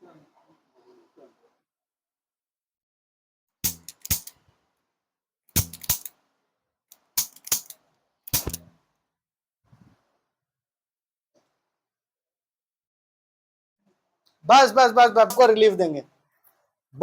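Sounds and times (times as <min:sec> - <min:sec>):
adjusting tool clicks: 0:03.7 - 0:04.3, 0:05.6 - 0:06.1, 0:06.9 - 0:08.7.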